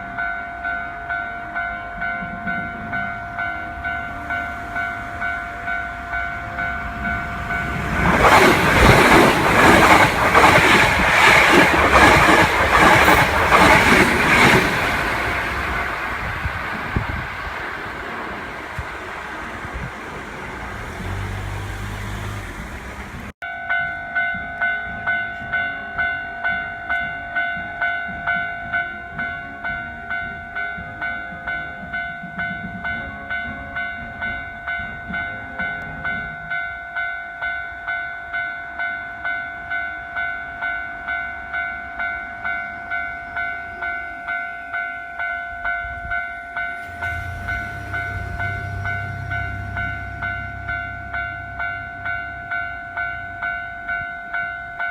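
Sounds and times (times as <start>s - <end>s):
train rumbling past: 0.0s - 54.9s
road traffic noise: 1.8s - 23.4s, 46.7s - 54.4s
level crossing electronic bell: 46.6s - 54.9s.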